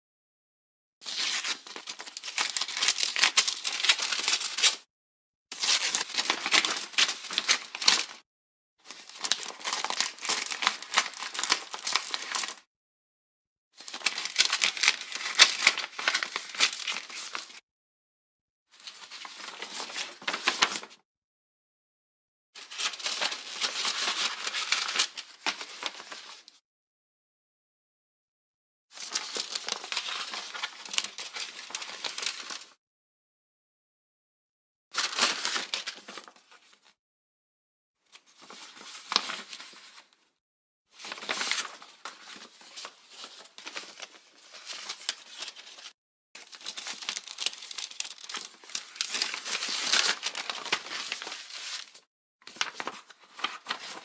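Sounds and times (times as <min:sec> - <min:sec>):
envelope tearing: 0:01.1 - 0:04.8, 0:09.1 - 0:12.6, 0:13.9 - 0:17.4, 0:43.2 - 0:54.0
paper crinkling: 0:08.9 - 0:12.6, 0:13.9 - 0:17.5, 0:19.3 - 0:20.9, 0:41.0 - 0:54.0.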